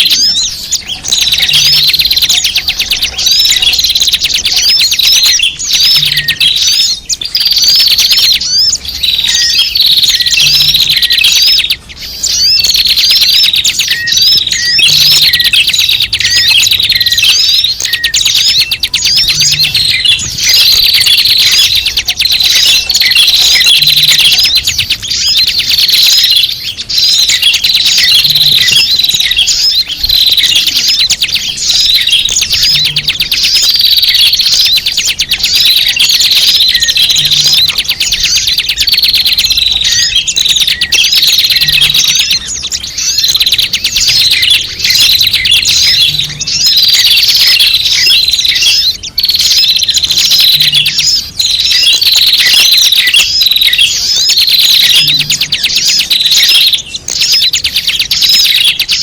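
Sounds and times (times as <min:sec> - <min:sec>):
small birds chattering: 0:00.0 - 0:59.0.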